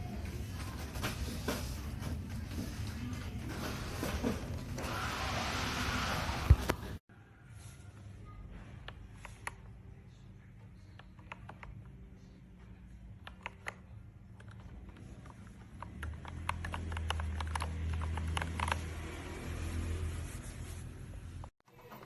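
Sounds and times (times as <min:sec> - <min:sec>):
mechanical keyboard typing: 0:14.4 - 0:19.1.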